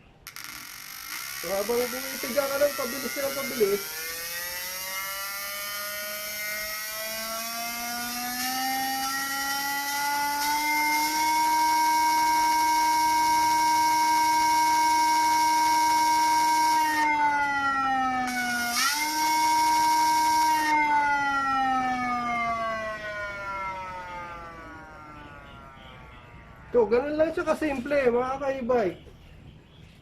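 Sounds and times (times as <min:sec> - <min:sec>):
electronic motor whine: 0:00.3 - 0:17.1, 0:18.2 - 0:20.9.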